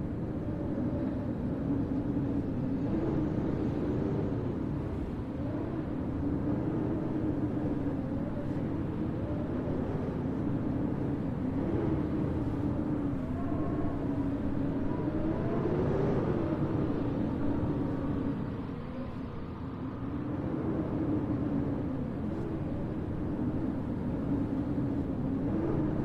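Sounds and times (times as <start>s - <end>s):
howling wind: 0.0s - 26.0s.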